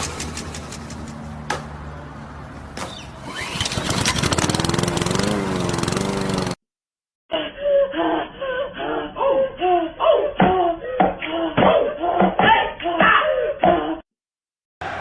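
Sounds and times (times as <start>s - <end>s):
small generator engine running: 3.1s - 6.6s.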